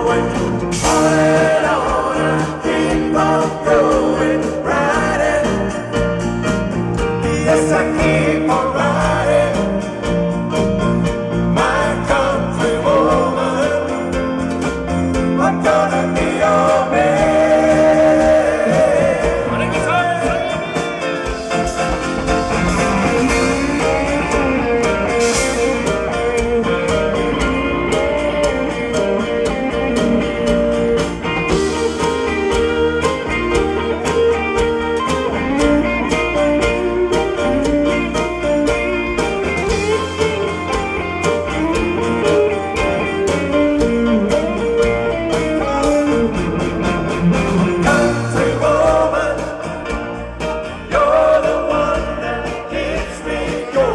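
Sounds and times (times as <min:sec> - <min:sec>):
electric guitar: 0:00.0 - 0:53.9
live country-rock band: 0:00.0 - 0:53.9.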